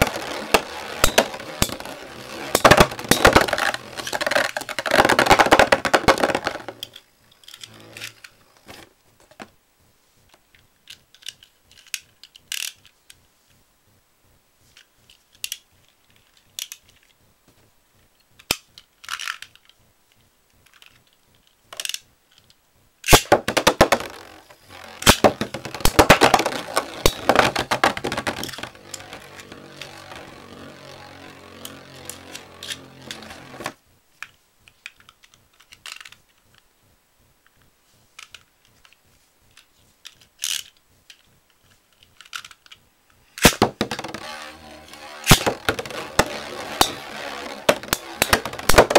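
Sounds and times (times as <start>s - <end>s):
spinning tops clicking and clashing: 0.0s - 6.9s, 23.1s - 33.8s, 43.4s - 48.9s
spinning top whirring: 0.0s - 7.0s, 23.4s - 33.8s, 43.4s - 48.9s.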